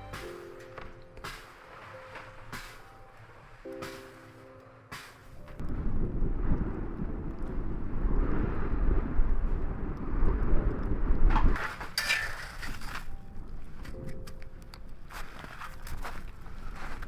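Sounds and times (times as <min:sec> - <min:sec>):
rustling crunching noise: 0:00.6 - 0:04.4, 0:11.4 - 0:17.0
blizzard wind buffeting microphone: 0:00.8 - 0:17.0.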